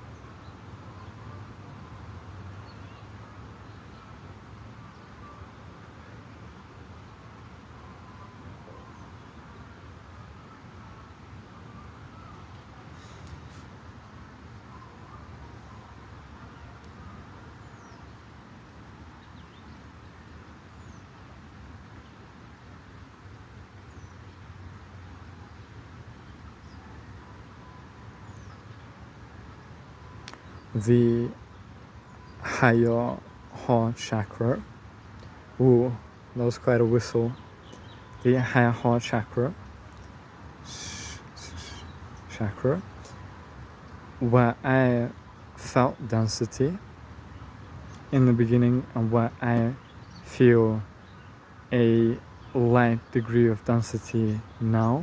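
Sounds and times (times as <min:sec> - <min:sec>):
background hiss: 0:11.2 - 0:55.0
faint high chirps: 0:29.5 - 0:43.3.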